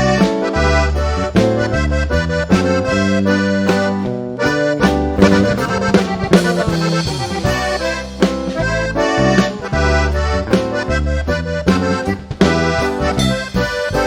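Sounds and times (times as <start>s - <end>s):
accordion melody: 0.0s - 14.0s
bass line: 0.0s - 14.0s
drum hits: 3.7s - 10.0s.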